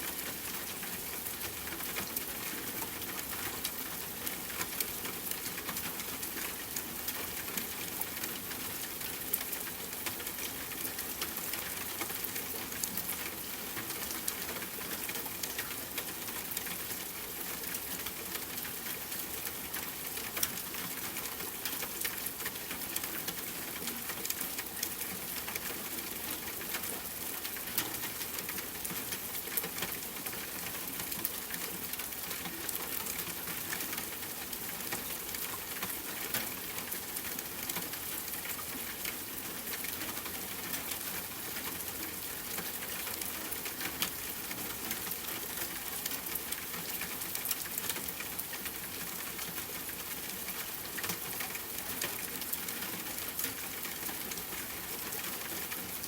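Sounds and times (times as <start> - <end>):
rain pattering on a surface: 0.0 - 56.0.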